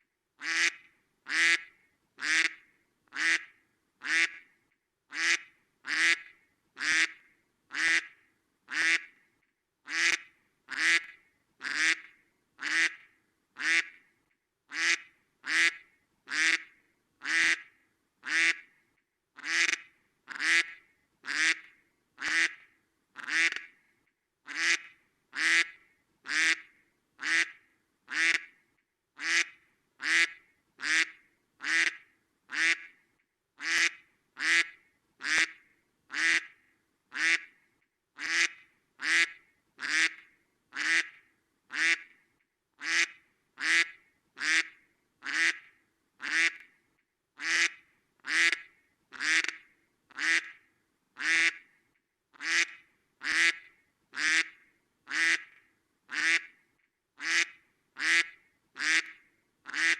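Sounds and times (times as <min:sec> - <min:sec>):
duck quacking: 0:00.4 - 0:02.6, 0:03.2 - 0:04.4, 0:05.1 - 0:08.1, 0:08.7 - 0:09.1, 0:09.9 - 0:13.0, 0:13.6 - 0:14.0, 0:14.7 - 0:18.6, 0:19.4 - 0:22.6, 0:23.2 - 0:23.7, 0:24.5 - 0:28.5, 0:29.2 - 0:32.9, 0:33.6 - 0:36.5, 0:37.1 - 0:37.5, 0:38.2 - 0:40.2, 0:40.8 - 0:42.1, 0:42.8 - 0:46.6, 0:47.4 - 0:50.6, 0:51.2 - 0:51.6, 0:52.4 - 0:53.6, 0:54.2 - 0:55.5, 0:56.1 - 0:56.5, 0:57.2 - 0:59.9.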